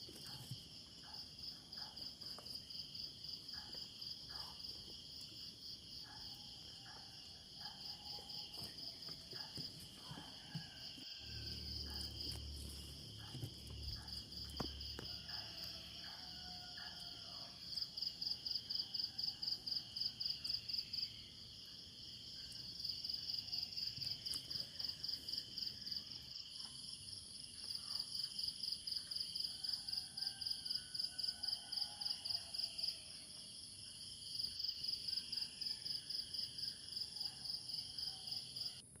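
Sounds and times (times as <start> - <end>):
crickets chirping: 0.0 - 39.0.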